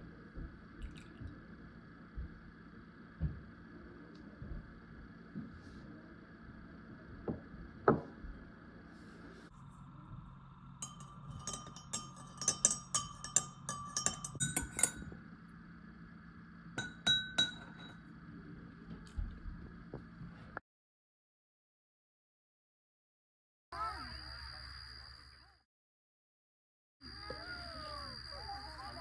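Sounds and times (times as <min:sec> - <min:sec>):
spoon clinking against glass: 0:10.8 - 0:15.2, 0:16.8 - 0:18.0.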